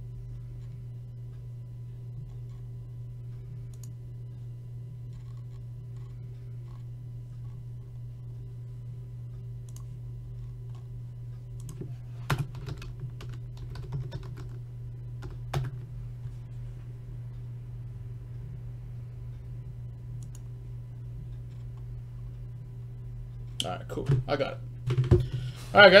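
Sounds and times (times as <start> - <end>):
low electrical hum: 0.0 - 26.0
keyboard typing clicks: 9.7 - 9.9, 11.6 - 14.6, 20.2 - 20.5.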